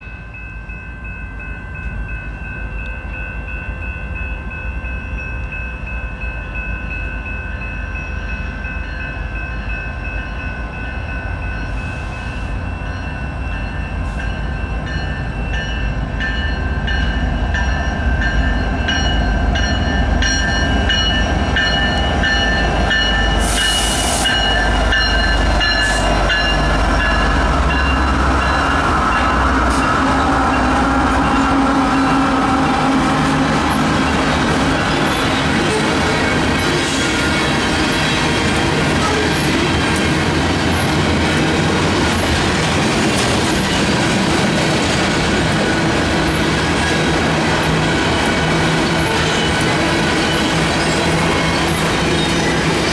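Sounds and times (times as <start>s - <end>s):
locomotive rumble: 6.4s - 52.9s
sharp hiss: 23.3s - 24.6s.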